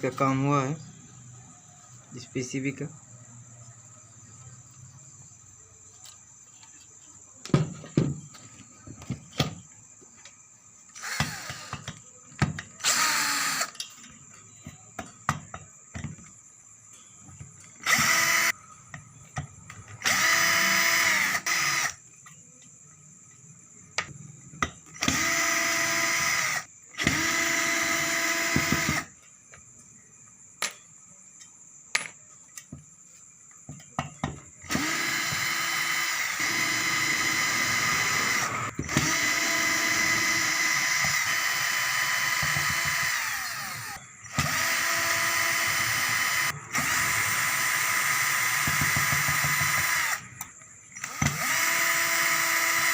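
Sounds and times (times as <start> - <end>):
electric screwdriver motor running: 17.8 - 18.5, 20.0 - 21.9, 25.0 - 29.1, 34.7 - 50.2, 51.0 - 52.9.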